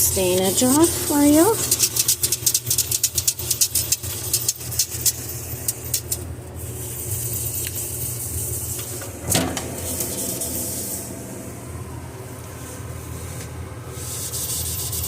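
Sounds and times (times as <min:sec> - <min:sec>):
steady low hum: 0:00.0 - 0:15.0
sponge rubbing fridge surface: 0:12.6 - 0:15.0.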